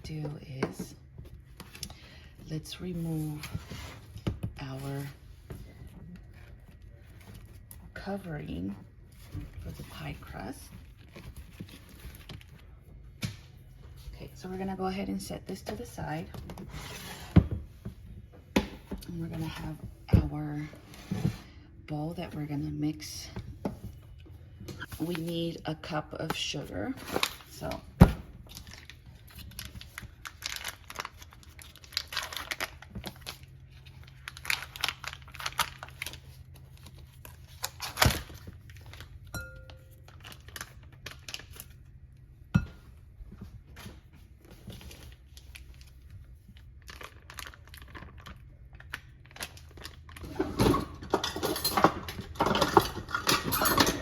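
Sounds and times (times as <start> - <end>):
food packaging crinkling: 28.5 - 41.9, 44.6 - 50.4.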